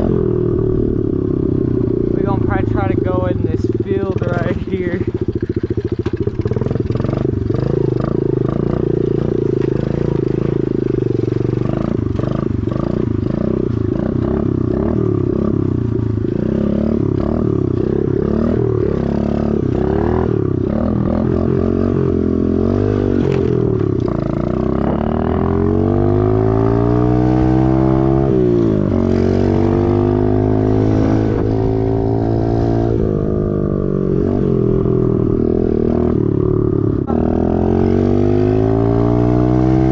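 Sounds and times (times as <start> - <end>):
small motorbike engine revving: 0.0 - 33.2, 33.8 - 39.9.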